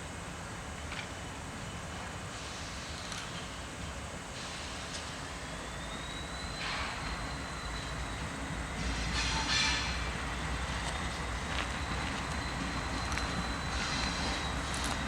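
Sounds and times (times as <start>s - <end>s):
train rumbling on rails: 0.1s - 15.0s
train clatter: 8.5s - 15.0s.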